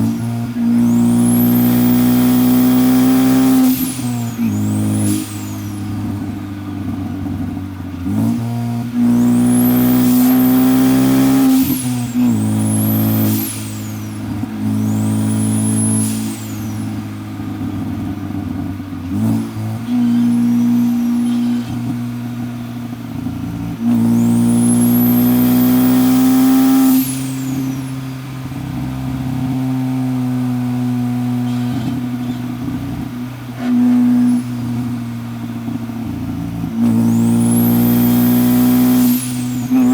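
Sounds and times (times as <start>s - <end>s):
turbo whistle: 0.0s - 6.5s, 9.0s - 17.6s, 23.8s - 29.8s, 36.8s - 39.9s
car engine accelerating: 0.0s - 39.9s.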